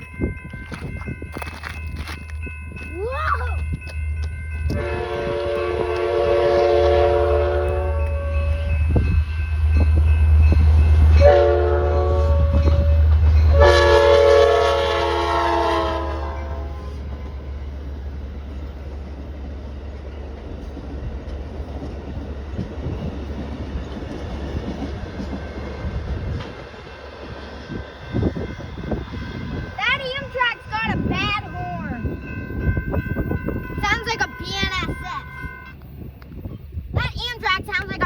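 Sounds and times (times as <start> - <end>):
train rail noise: 0.0 - 38.0
train air horn blasts: 4.8 - 8.7, 11.2 - 12.9, 13.5 - 17.0.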